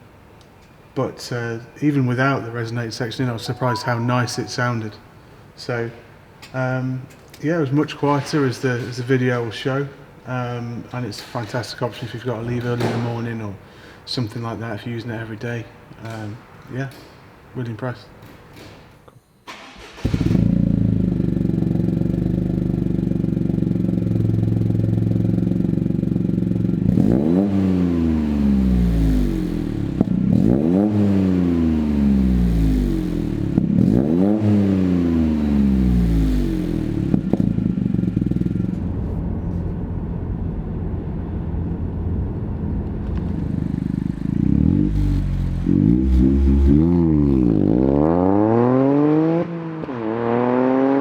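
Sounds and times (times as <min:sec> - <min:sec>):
car engine revving: 0:19.9 - 0:39.2, 0:41.0 - 0:51.0.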